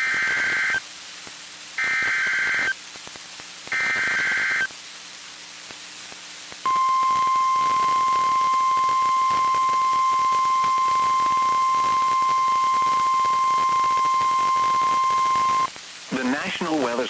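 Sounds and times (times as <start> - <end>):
buzzy digital data bursts: 0.0 - 0.8, 1.8 - 2.8, 3.7 - 4.7, 6.6 - 16.6
static hiss: 0.0 - 17.0
steady warning alarm tone: 1.8 - 2.7, 3.8 - 4.7, 6.7 - 15.7.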